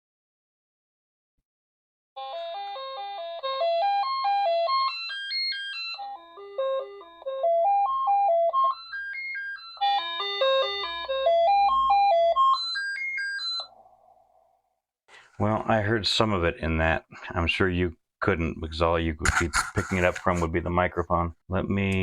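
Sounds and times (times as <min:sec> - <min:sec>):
electronic chip melody from speaker: 0:02.2 - 0:13.7.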